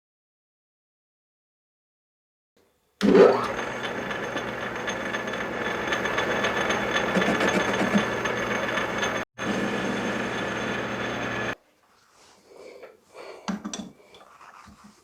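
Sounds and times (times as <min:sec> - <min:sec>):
machine tool humming: 0:03.0 - 0:11.6
thin high whine: 0:05.6 - 0:11.6.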